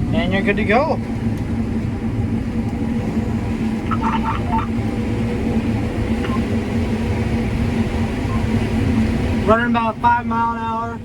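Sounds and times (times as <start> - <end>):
combine harvester engine drone: 0.0 - 11.0
short electronic beeps: 6.2 - 6.5.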